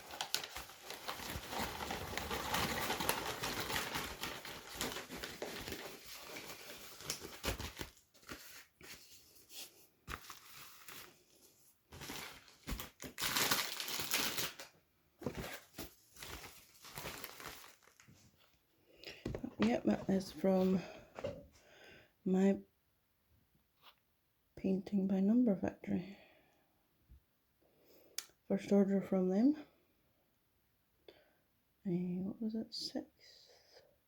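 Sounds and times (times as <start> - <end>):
packaging crinkling: 0.0 - 9.1, 10.1 - 18.5.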